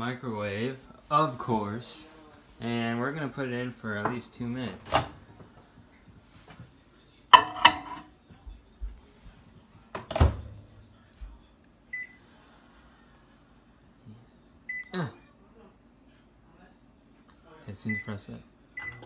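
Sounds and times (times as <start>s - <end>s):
keypad beeps: 18.8s - 19.0s.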